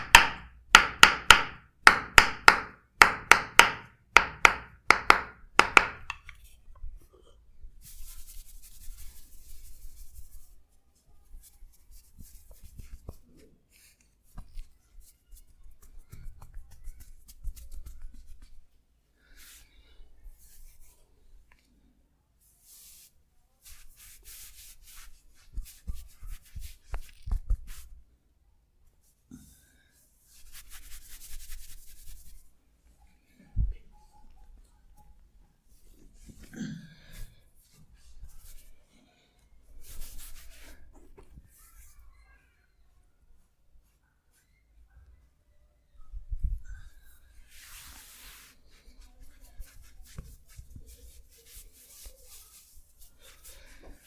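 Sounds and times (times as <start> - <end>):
hands rubbing over skin: 7.8 - 10.6, 11.3 - 18.7, 22.5 - 27.9, 30.3 - 32.5, 39.8 - 41.2, 47.4 - 54.0.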